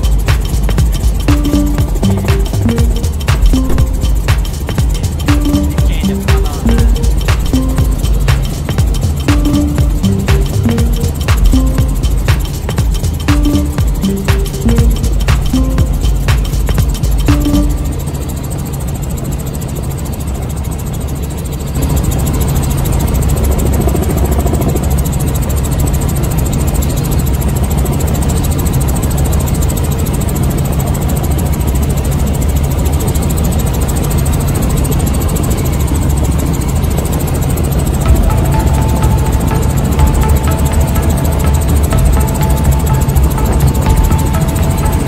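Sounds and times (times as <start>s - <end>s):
helicopter engine and rotor: 17.2s - 45.0s.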